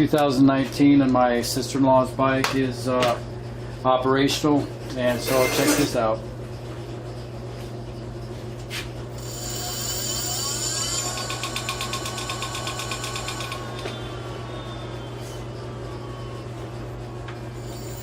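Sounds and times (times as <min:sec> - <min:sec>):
electric motor whine: 0:09.2 - 0:16.6, 0:17.5 - 0:18.0.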